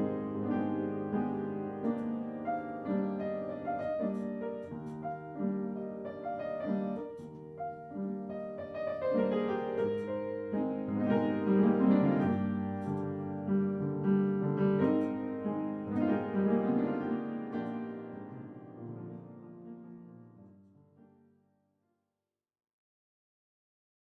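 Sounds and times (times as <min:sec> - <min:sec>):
slow piano melody: 0:00.0 - 0:21.4.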